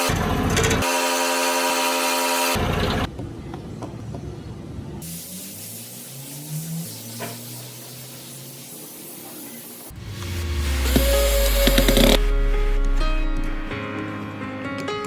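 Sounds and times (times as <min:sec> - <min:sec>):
spraying hiss: 0:05.0 - 0:13.8
faint low tones: 0:09.9 - 0:13.8.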